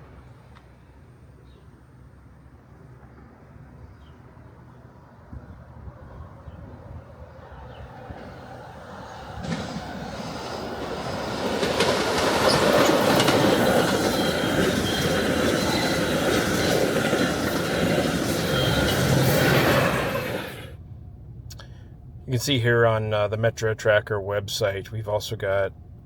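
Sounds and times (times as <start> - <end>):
train wheels rumbling over rail joints: 7.4 - 20.8.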